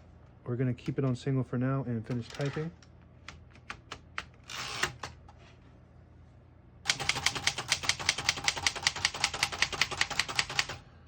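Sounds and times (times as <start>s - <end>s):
manual typewriter typing: 6.9s - 10.8s.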